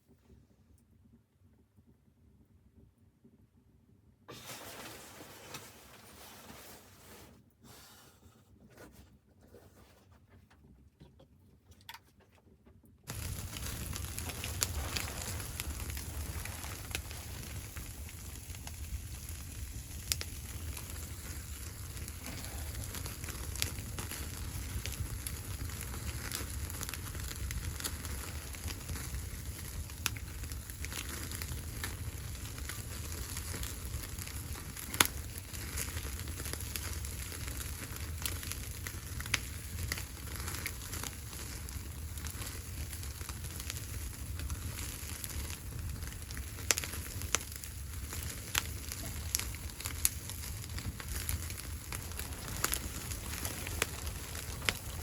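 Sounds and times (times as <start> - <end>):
wood fire crackling and popping: 4.3 - 7.3, 11.0 - 55.0
low rumble: 50.5 - 55.0.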